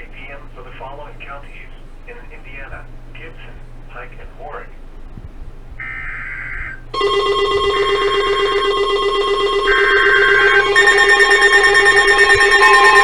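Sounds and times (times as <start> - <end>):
harsh steady attention tone: 5.8 - 13.0
screechy digital data burst: 9.6 - 13.0.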